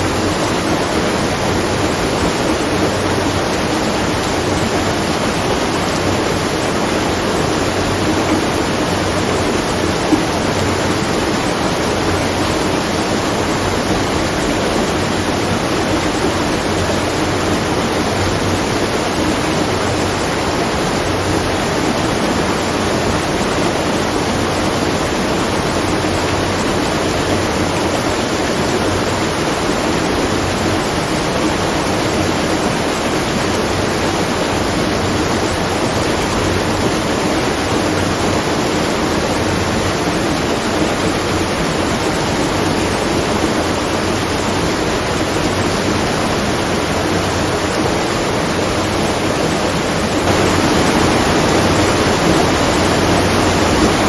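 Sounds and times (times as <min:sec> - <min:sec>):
water falling and splashing: 0:00.0 - 0:54.0.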